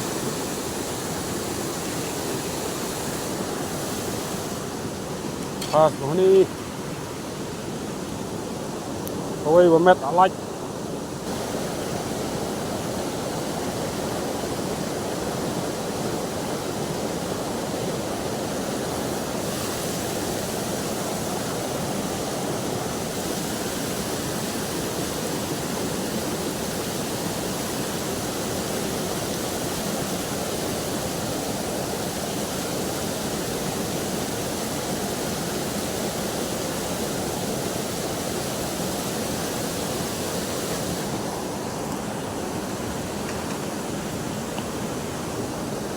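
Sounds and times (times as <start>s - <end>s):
river water rushing: 0.0s - 45.9s.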